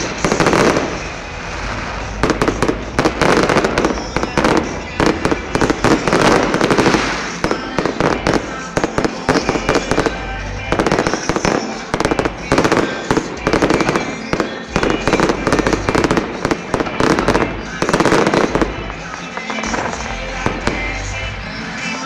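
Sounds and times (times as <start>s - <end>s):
fireworks bangs and crackling: 0.0s - 22.0s.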